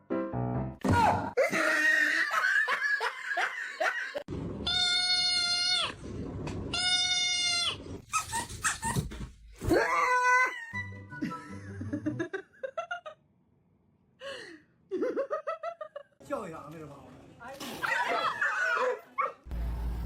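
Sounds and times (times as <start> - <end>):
pet animal crying out: 4.6 - 6.0, 6.7 - 8.9.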